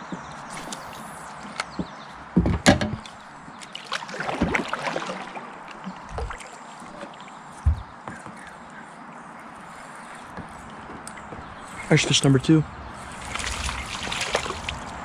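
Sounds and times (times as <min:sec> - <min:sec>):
gear thumping against boat: 0:07.6 - 0:08.4.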